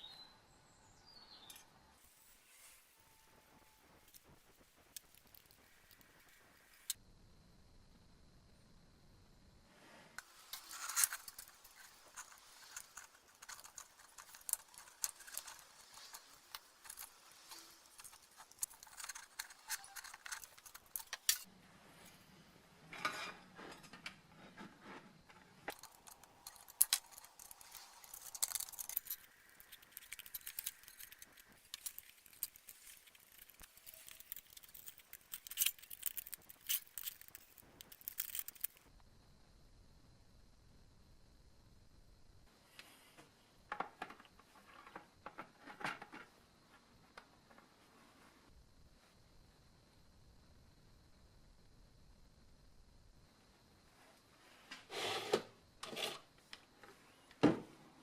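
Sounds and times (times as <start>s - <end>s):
metal clinking and scraping: 10.2s - 22.2s, 22.9s - 38.9s.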